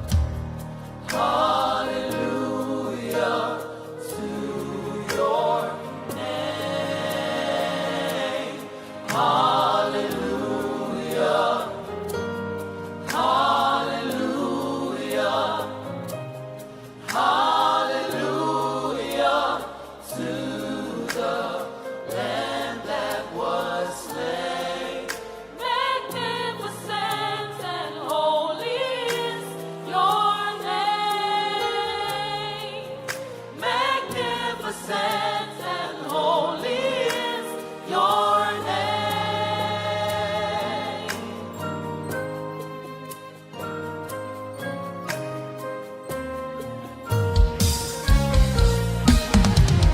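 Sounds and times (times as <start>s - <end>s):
instrumental backing with bass line: 0.0s - 17.8s, 37.2s - 49.9s
gospel choir singing: 0.0s - 49.9s.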